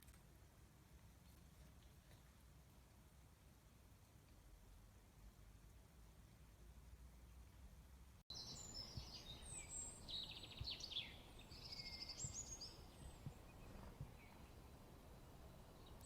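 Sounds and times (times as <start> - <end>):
bird twittering softly: 8.3 - 16.0.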